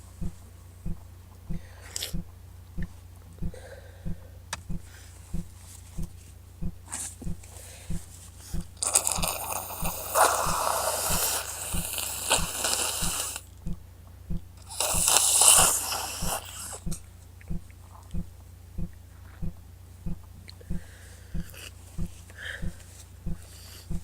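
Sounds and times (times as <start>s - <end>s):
woman blowing her nose: 8.8s - 13.4s, 14.6s - 16.9s.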